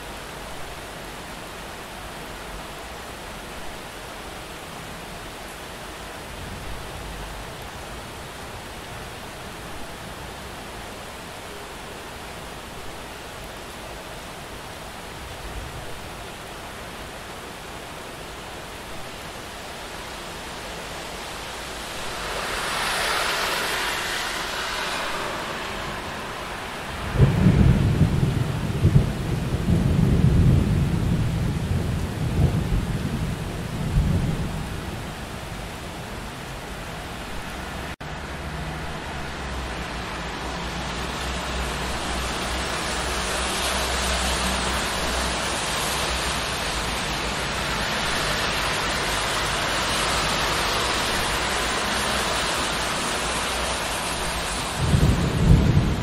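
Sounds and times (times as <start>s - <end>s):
steady rain: 0.0s - 56.0s
car hissing past on wet road: 21.0s - 27.1s
rolling thunder: 26.5s - 35.0s, 54.6s - 56.0s.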